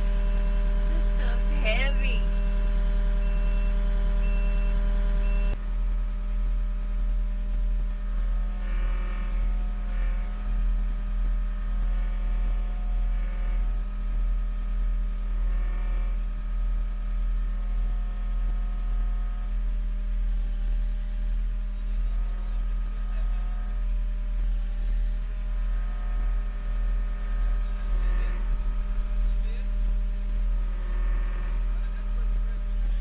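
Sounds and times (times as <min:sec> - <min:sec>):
diesel engine running: 0:00.0 - 0:33.0
high whine under load: 0:00.0 - 0:33.0
backup alarm beeping: 0:03.2 - 0:05.6.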